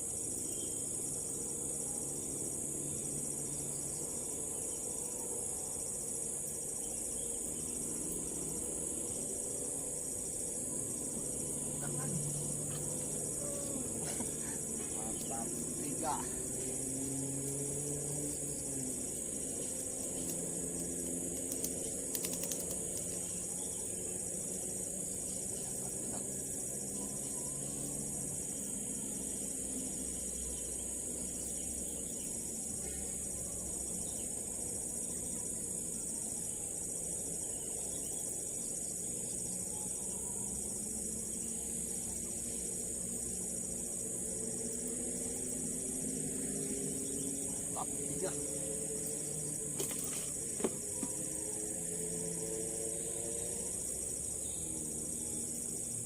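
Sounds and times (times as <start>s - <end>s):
crickets chirring: 0.0s - 56.0s
faint clicks: 19.6s - 23.3s.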